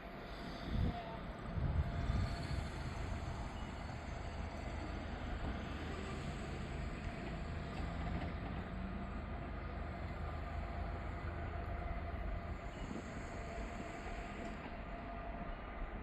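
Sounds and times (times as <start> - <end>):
freight train rumbling on rails: 0.0 - 16.0.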